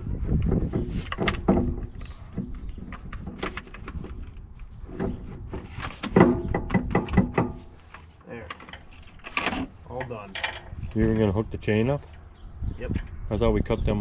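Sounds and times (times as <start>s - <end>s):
knocks and clatter: 0.4s - 11.0s.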